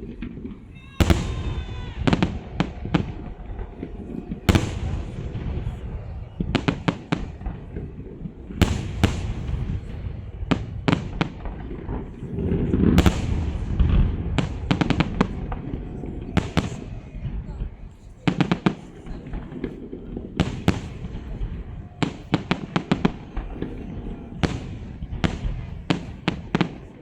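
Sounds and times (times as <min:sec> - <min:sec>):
fireworks banging: 0:00.0 - 0:27.0.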